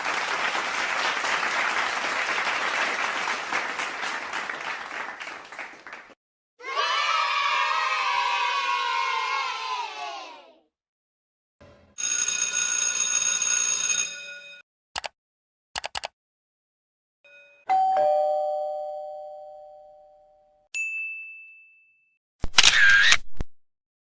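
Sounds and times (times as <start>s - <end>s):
sharp clicks: 15.0s - 15.2s, 15.8s - 16.1s
ding-dong doorbell chime: 17.3s - 22.2s
high ding: 17.3s - 22.2s.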